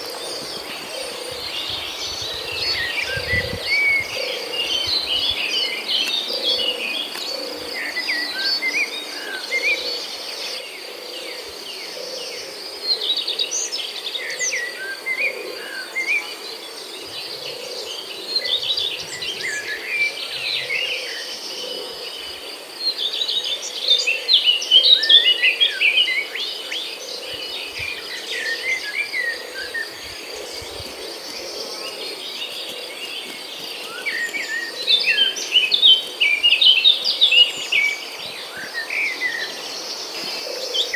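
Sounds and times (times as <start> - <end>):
small birds chirping: 0.0 - 9.1
insect trill: 0.0 - 40.9.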